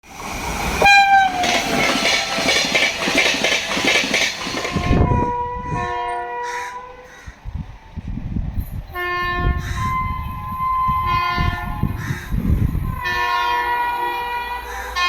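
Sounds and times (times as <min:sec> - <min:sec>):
train rumbling past: 0:00.0 - 0:15.0
locomotive horn blowing: 0:00.8 - 0:02.4, 0:04.7 - 0:07.1, 0:09.0 - 0:12.0, 0:12.8 - 0:15.0.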